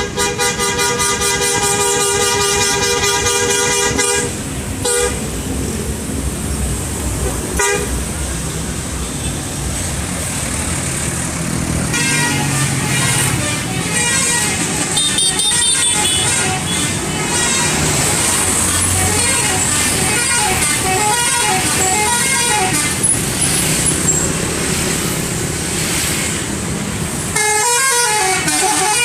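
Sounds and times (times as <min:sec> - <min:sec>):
musical air horns playing tune: 0:00.0 - 0:05.3, 0:07.6 - 0:07.9, 0:11.9 - 0:23.4, 0:27.3 - 0:29.0
bus engines rumbling: 0:00.0 - 0:29.0.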